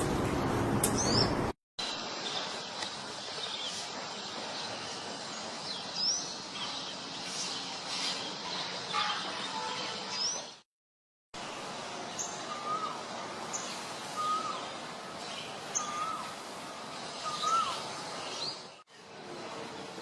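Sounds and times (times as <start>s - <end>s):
steady background hiss: 11.4s - 20.0s.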